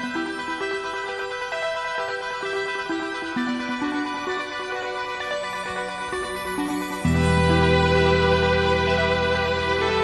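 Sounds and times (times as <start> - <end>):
background music melody: 0.0 - 10.0.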